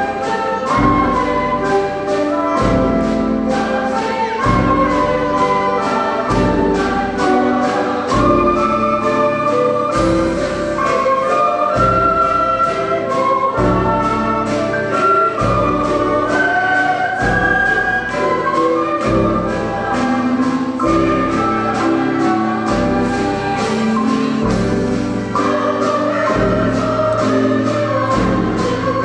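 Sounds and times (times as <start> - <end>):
choir singing: 0.0 - 29.0
orchestral instruments: 0.0 - 29.0.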